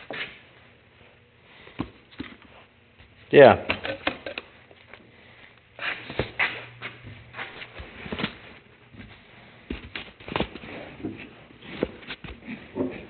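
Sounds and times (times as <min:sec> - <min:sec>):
objects being moved about: 0:01.6 - 0:05.1, 0:05.8 - 0:13.0.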